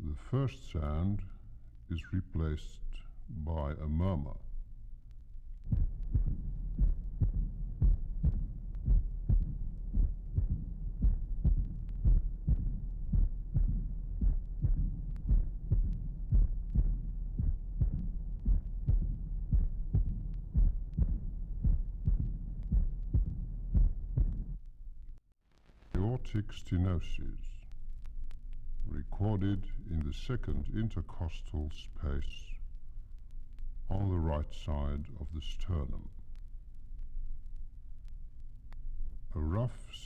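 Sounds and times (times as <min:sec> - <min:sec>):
heart murmur and heartbeat: 0:05.1 - 0:25.2.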